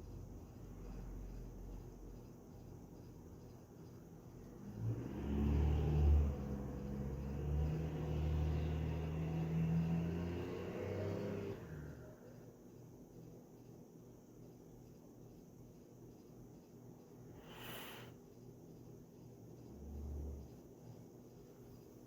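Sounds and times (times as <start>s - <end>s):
vehicle engine drone passing: 4.6s - 12.0s.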